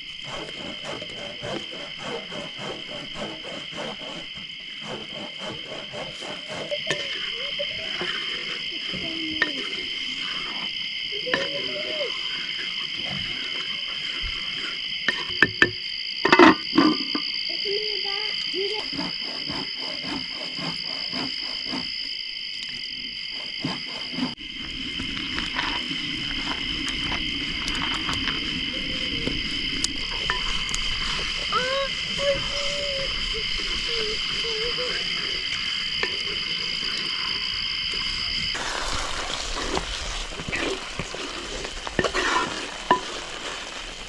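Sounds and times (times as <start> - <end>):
crickets chirping: 0.0 - 44.0.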